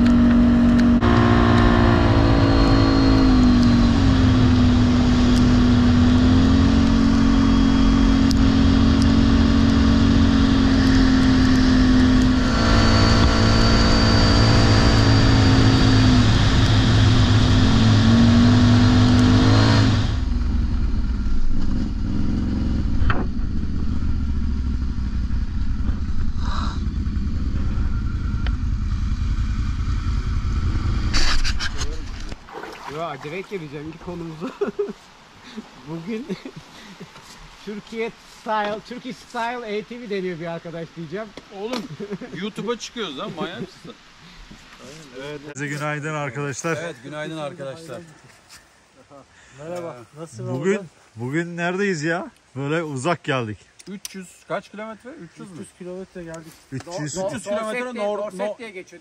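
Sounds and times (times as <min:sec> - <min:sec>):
vehicle engine running: 0:00.0 - 0:32.5.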